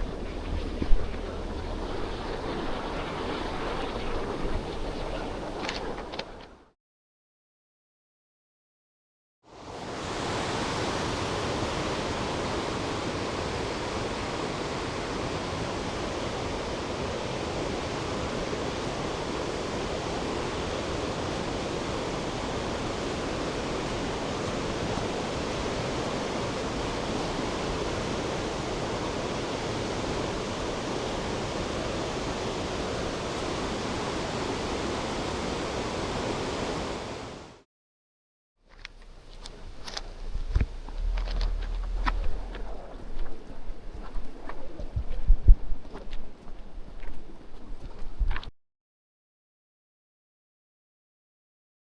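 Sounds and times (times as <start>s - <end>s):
mountain stream rushing: 9.7s - 37.6s, 38.8s - 45.0s.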